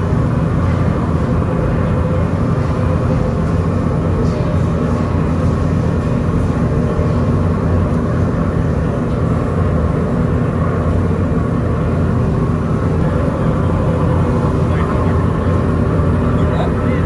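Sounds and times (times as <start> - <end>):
factory machinery droning: 0.0 - 17.0.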